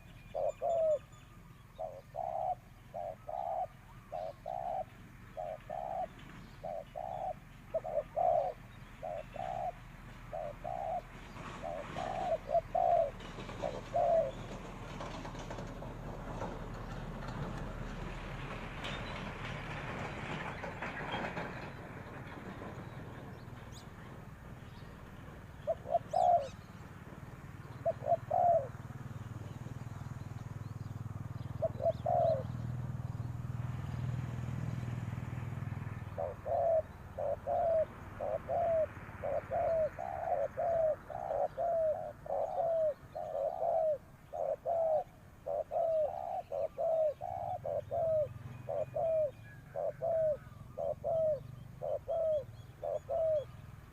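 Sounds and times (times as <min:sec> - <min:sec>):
dove cooing: 0:00.0 - 0:16.8, 0:25.2 - 0:30.0, 0:30.9 - 0:33.0, 0:36.0 - 0:53.9.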